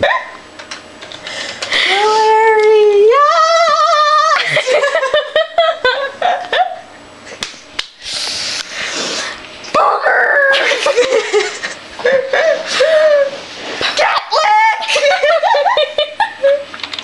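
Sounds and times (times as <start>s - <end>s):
breathy hiss: 8.0s - 9.5s
person squealing: 9.8s - 10.8s.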